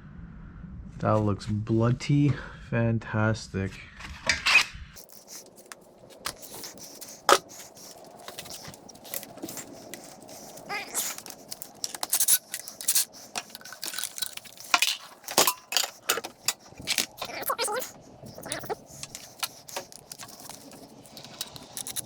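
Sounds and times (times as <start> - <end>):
tools clinking on metal: 8.2 - 17.5, 18.4 - 22.0.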